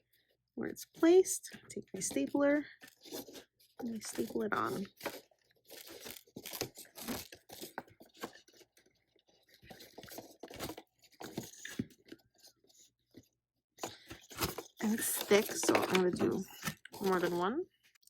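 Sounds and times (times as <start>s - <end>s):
paper rustling and crinkling: 1.5s - 17.4s
stapler crunching through paper: 2.9s - 8.6s, 13.8s - 17.4s.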